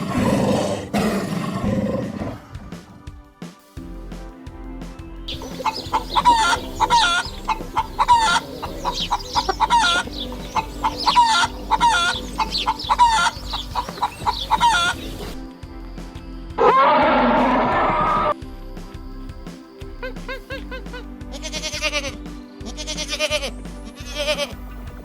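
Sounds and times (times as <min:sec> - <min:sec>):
chickens clucking and squawking: 0:05.4 - 0:15.4.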